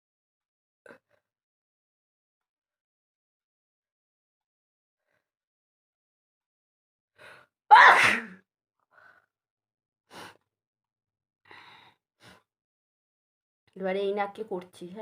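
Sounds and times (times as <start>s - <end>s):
woman sneezing: 7.7s - 8.4s.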